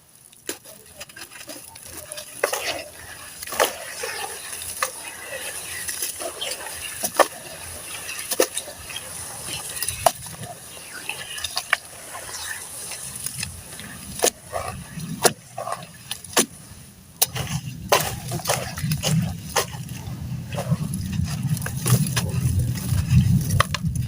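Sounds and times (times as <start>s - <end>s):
gritty rustle: 0.2s - 24.0s
slabs cracking and crunching: 17.2s - 24.0s.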